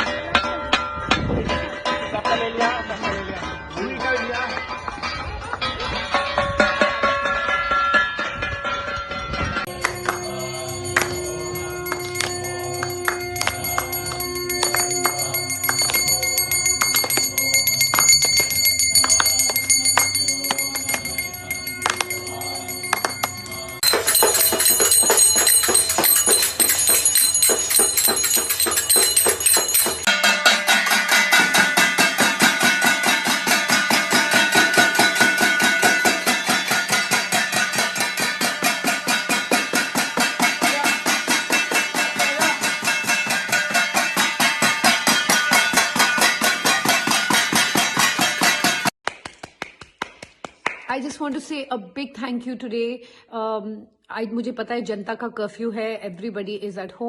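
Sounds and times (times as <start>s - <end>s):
bell ringing: 6.1s - 49.0s
metal clanging: 6.2s - 49.0s.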